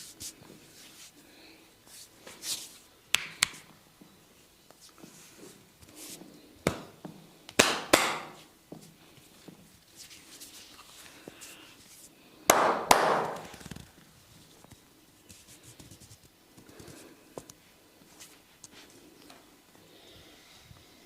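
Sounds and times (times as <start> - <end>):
hands rubbing on skin and hair: 0.0 - 1.2, 1.9 - 3.7, 9.8 - 12.1, 15.2 - 17.0
hands smacking during massage: 3.1 - 3.7, 6.6 - 8.5, 12.5 - 13.9.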